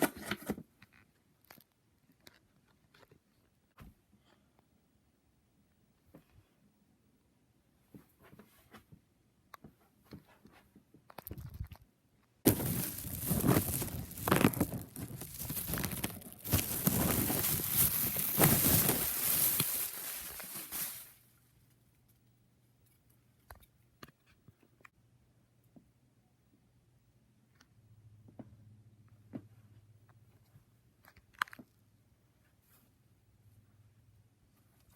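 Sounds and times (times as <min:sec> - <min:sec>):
loud rustling and crunching: 0:12.5 - 0:21.2.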